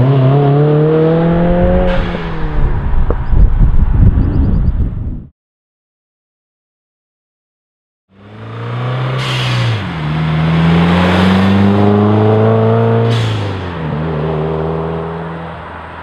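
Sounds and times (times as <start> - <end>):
car engine accelerating: 0.0 - 3.2, 8.1 - 15.9.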